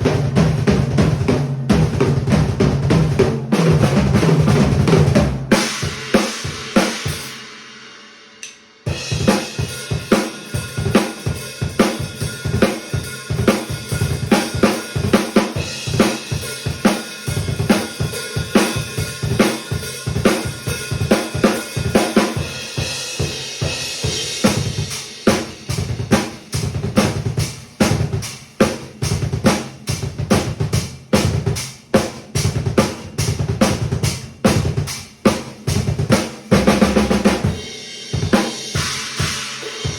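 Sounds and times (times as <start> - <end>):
drum kit groove: 0.0 - 39.9
cymbal crash: 37.5 - 39.9.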